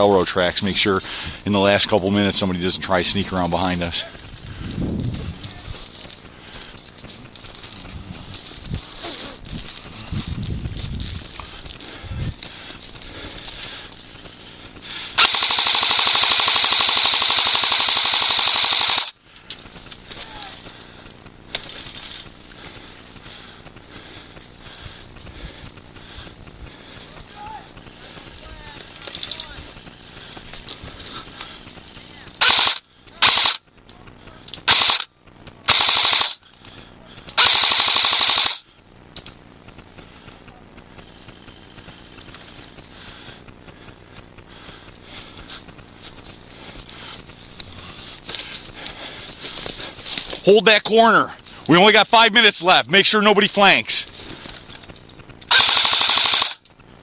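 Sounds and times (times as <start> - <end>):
airsoft rifle firing full auto: 15.2 - 19.2, 32.4 - 33.7, 34.6 - 35.1, 35.7 - 36.4, 37.4 - 38.7, 55.5 - 56.7.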